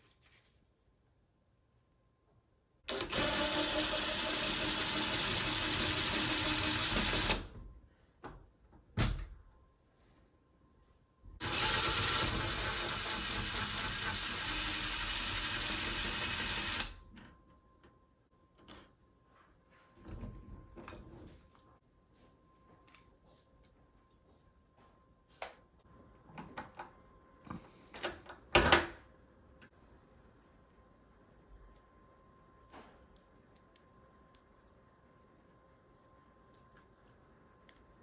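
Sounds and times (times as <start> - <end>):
small electric motor running: 2.9 - 7.5, 11.4 - 17.0.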